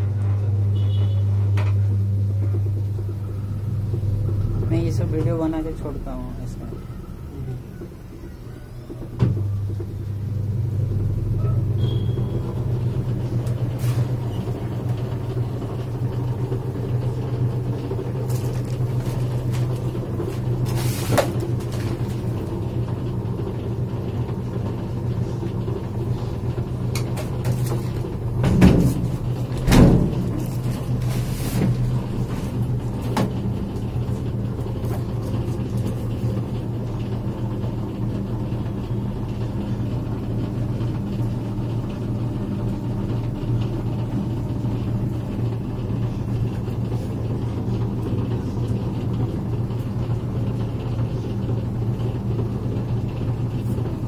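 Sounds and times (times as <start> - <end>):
washing machine humming: 0.0 - 54.0
washing machine knocks: 8.8 - 10.1, 26.9 - 30.5, 31.6 - 33.8.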